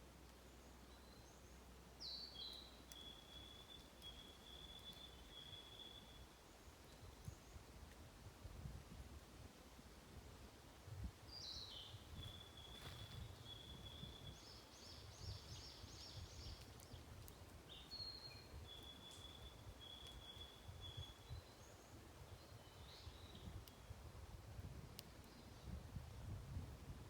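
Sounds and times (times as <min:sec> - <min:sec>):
bird whistling song: 0:02.0 - 0:06.2, 0:11.3 - 0:16.6, 0:17.7 - 0:21.7
low wind rumble: 0:07.3 - 0:18.8, 0:20.5 - 0:27.0.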